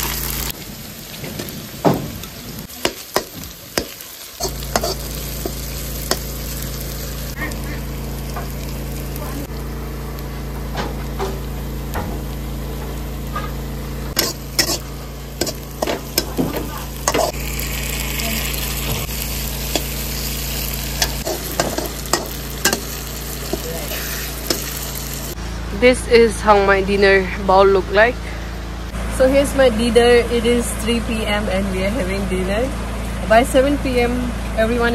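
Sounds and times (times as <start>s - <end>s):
vegetables sizzling in a pan: 0.0s - 25.4s
steady low hum: 1.5s - 34.9s
spatula scraping a pan: 2.8s - 6.3s, 14.1s - 17.4s, 19.6s - 24.8s.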